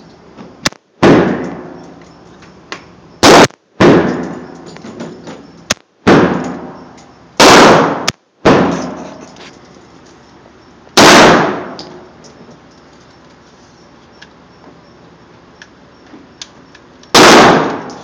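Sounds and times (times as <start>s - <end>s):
rifle shots with echo: 0.6s - 1.8s, 3.2s - 4.5s, 5.7s - 6.8s, 7.4s - 9.0s, 11.0s - 12.0s, 17.1s - 18.0s.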